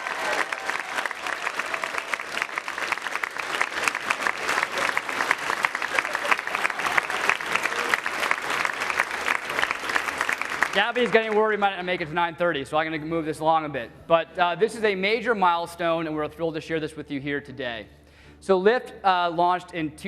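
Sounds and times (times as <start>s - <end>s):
crowd applauding: 0.0s - 12.2s.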